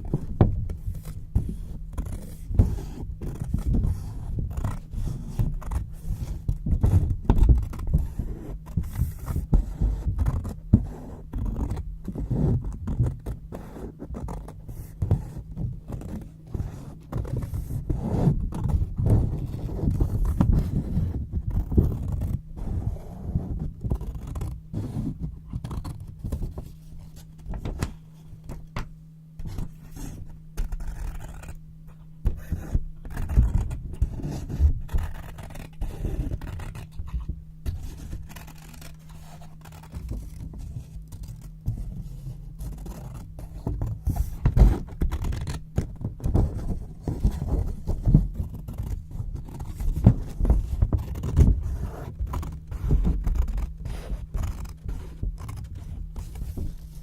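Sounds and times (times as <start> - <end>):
scissors cutting paper: 32.4 - 37.1, 37.9 - 41.5, 42.6 - 56.6.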